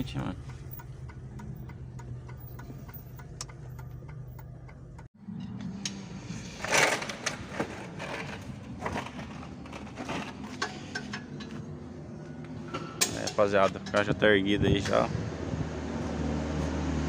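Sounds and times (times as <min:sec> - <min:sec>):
car engine idling: 0:00.0 - 0:05.1.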